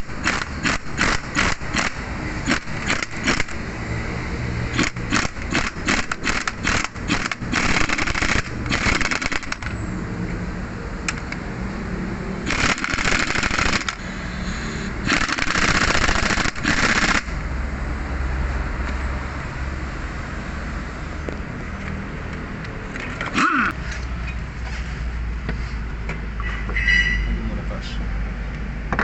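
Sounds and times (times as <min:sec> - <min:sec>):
impact wrench rattling: 0:00.2 - 0:03.6, 0:04.8 - 0:09.8.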